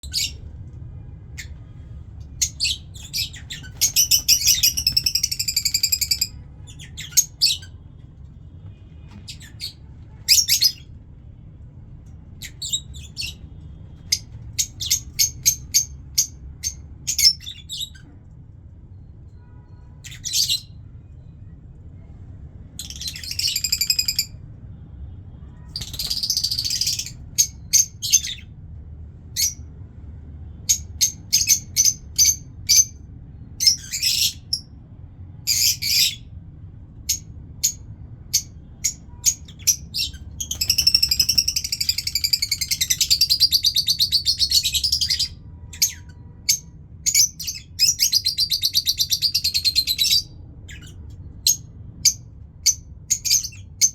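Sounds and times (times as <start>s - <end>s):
lovebirds chirping: 0.0s - 0.6s, 1.4s - 8.0s, 8.7s - 11.0s, 12.4s - 18.1s, 19.9s - 21.2s, 22.8s - 24.4s, 25.7s - 28.6s, 30.7s - 34.7s, 35.5s - 36.3s, 37.1s - 53.9s.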